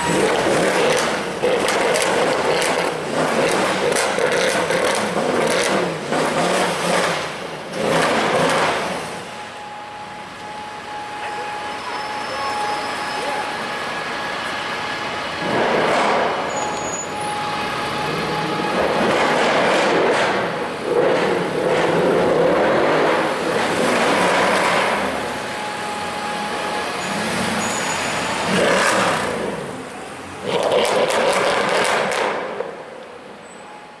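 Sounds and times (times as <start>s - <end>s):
car engine revving: 0.0s - 9.2s, 15.4s - 16.6s, 17.8s - 25.4s, 27.0s - 32.8s.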